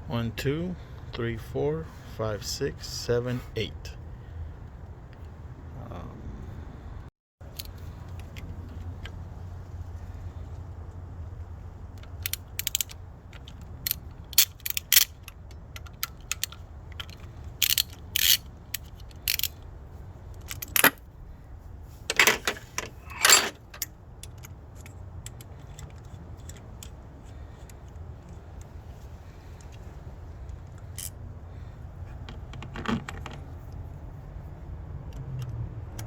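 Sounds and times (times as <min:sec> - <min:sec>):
steady low hum: 0:00.0 - 0:35.2
metal tools clicking and clinking: 0:12.0 - 0:19.6, 0:22.1 - 0:27.0.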